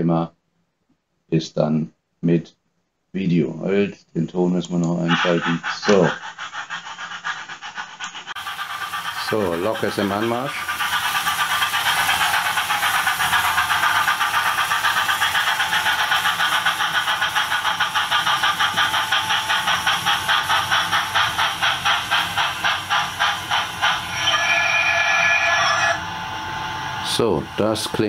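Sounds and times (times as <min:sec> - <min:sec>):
model locomotive running beat: 0:05.0 - 0:28.0
brake squeal: 0:24.0 - 0:26.0.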